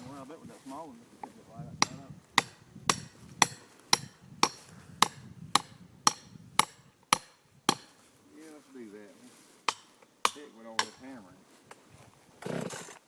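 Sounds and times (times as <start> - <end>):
hammer strikes ringing: 9.7 - 11.2.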